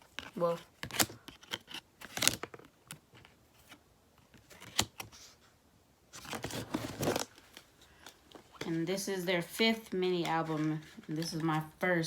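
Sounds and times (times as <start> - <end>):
paper and plastic rustling: 6.1 - 8.9, 10.2 - 11.8.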